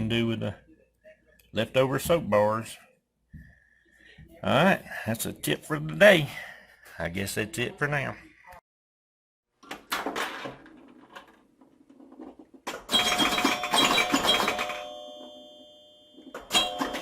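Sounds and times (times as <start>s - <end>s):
bell-like ringing clash: 12.9s - 17.0s.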